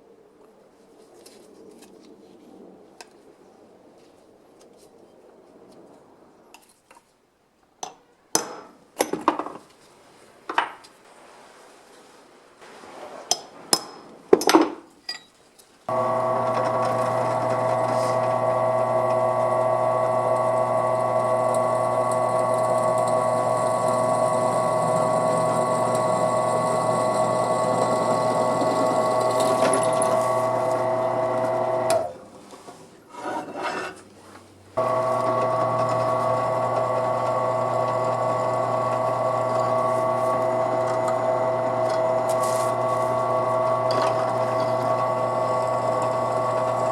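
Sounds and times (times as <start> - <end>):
solenoid valve buzzing hum: 15.9 - 32.3, 34.8 - 46.9.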